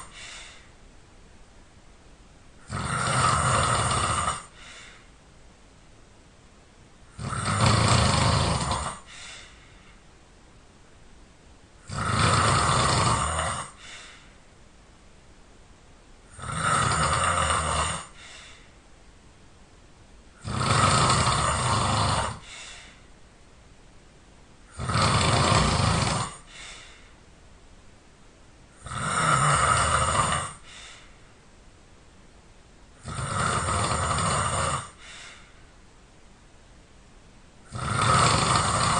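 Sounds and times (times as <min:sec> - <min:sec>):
person snoring loudly: 0:00.0 - 0:00.6, 0:02.6 - 0:05.0, 0:07.1 - 0:09.5, 0:11.8 - 0:14.2, 0:16.3 - 0:18.6, 0:20.4 - 0:22.9, 0:24.7 - 0:26.8, 0:28.8 - 0:31.0, 0:33.0 - 0:35.4, 0:37.7 - 0:38.9.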